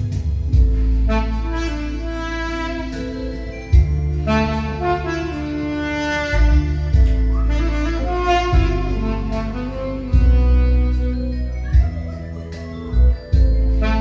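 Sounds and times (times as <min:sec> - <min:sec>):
steady drum beat: 0:00.0 - 0:01.6, 0:03.8 - 0:04.3, 0:08.2 - 0:09.0, 0:10.1 - 0:10.7
bass line: 0:00.0 - 0:14.0
keyboard accompaniment: 0:00.0 - 0:14.0
saxophone melody: 0:00.6 - 0:14.0.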